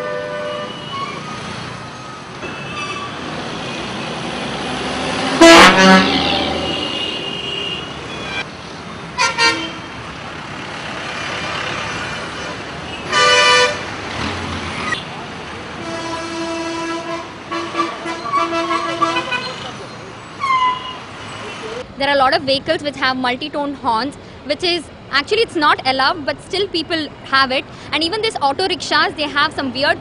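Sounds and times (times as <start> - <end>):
vehicle air horns blaring: 0.0 - 1.2, 5.4 - 8.4, 9.2 - 10.0, 12.9 - 13.9, 15.8 - 19.7
distant horns: 0.0 - 1.6, 2.4 - 8.5, 9.2 - 10.0, 11.5 - 14.0, 14.9 - 21.6
road traffic: 0.0 - 30.0.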